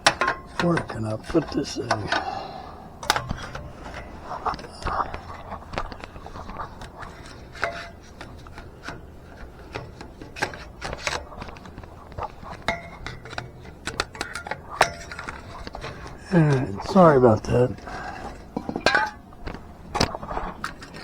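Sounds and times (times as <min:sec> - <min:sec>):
tools and parts clattering: 0:00.0 - 0:21.0
person muttering: 0:16.2 - 0:17.8.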